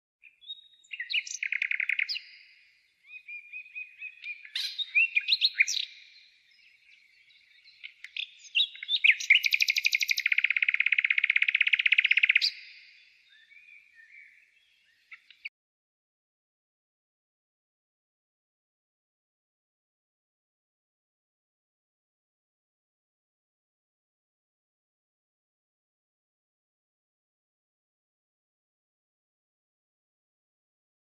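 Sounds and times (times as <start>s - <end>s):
songbird singing: 0.2s - 15.5s.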